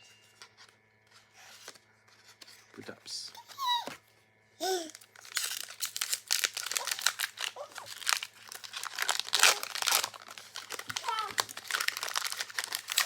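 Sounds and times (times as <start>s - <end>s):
foil wrapper crinkling: 4.9s - 13.0s.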